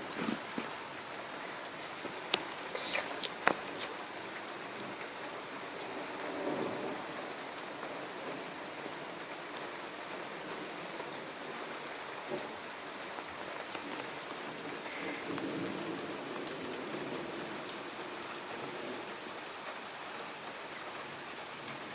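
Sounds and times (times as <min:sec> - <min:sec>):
steady rain falling: 0:00.0 - 0:21.9
low rumble of thunder: 0:05.8 - 0:09.3, 0:14.5 - 0:19.4.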